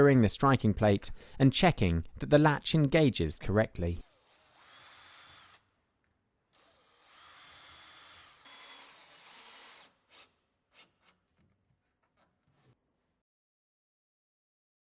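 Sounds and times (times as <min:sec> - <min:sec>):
faint power drill running: 0:04.0 - 0:05.7, 0:06.6 - 0:10.2.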